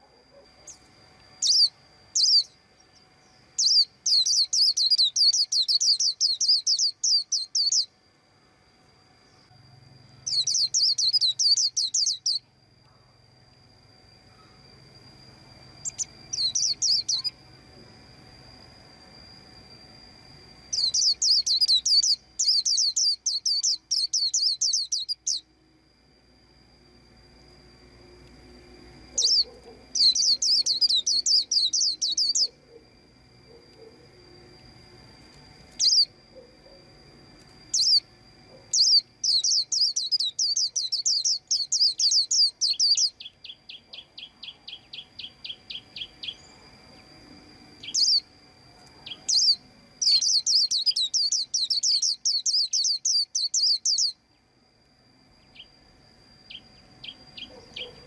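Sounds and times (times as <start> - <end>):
bird chirping: 0.0 - 7.9, 10.2 - 12.5, 15.7 - 17.4, 20.7 - 25.6, 29.1 - 32.8, 35.7 - 36.8, 37.7 - 46.6, 47.8 - 48.3, 49.0 - 54.4, 56.5 - 58.0
faint steady high tone: 0.0 - 58.0.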